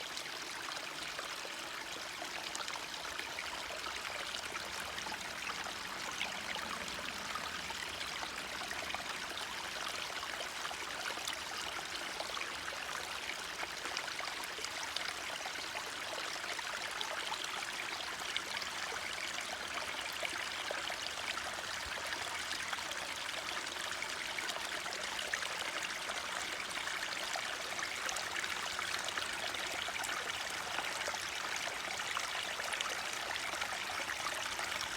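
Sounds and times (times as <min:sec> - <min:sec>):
stream flowing: 0:00.0 - 0:34.9.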